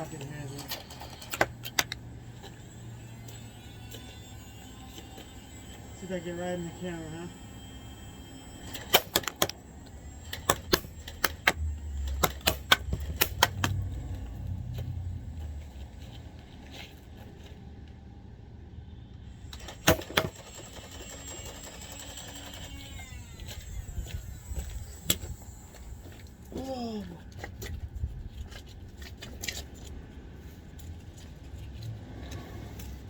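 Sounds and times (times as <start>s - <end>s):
toy blaster plastic clicks: 8.7s - 9.6s, 10.2s - 13.8s, 19.5s - 23.7s.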